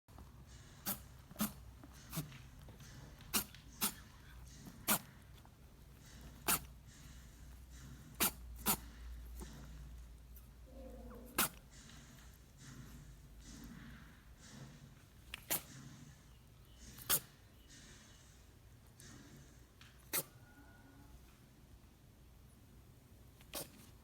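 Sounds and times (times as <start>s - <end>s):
rabbit sneezing: 0.6s - 5.2s, 6.1s - 7.0s, 8.1s - 9.8s, 10.4s - 13.0s, 15.4s - 16.2s, 16.8s - 17.4s, 20.0s - 20.6s, 23.4s - 24.0s.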